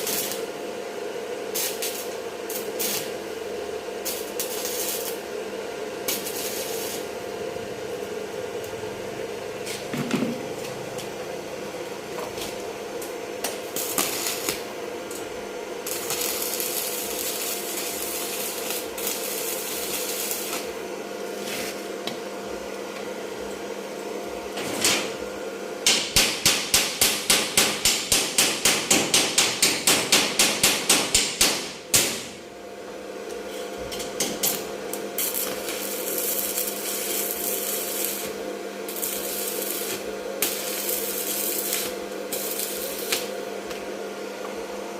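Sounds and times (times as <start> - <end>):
steady workshop hum: 0.0 - 44.9
rapid hammering: 25.9 - 32.2.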